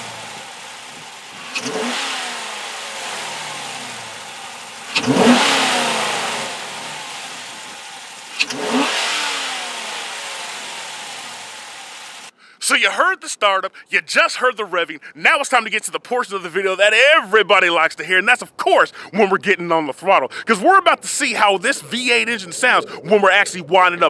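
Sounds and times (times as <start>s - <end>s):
car engine revving: 0.0s - 12.3s, 20.5s - 24.0s.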